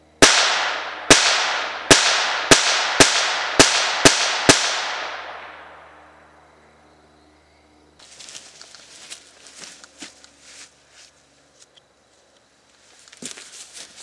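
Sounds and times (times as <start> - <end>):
light clicks and rustles: 8.2 - 14.0.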